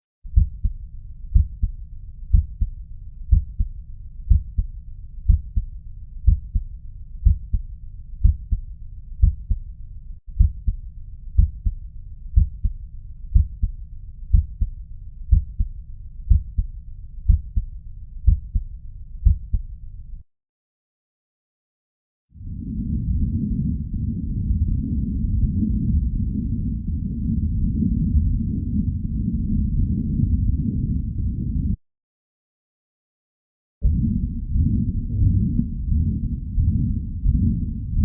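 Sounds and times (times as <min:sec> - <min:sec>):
heartbeat through stethoscope: 0:00.3 - 0:09.7, 0:10.3 - 0:19.7, 0:33.8 - 0:38.0
low continuous rumble: 0:00.3 - 0:20.2, 0:22.4 - 0:31.8, 0:33.8 - 0:38.0.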